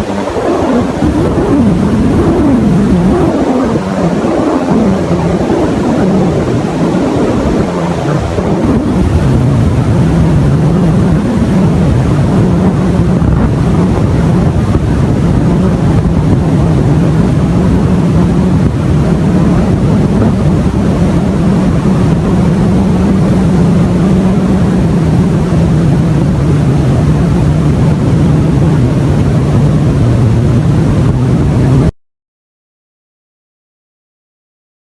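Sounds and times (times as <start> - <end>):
loud droning hum: 0.0 - 31.9
rough rushing noise: 0.0 - 31.9.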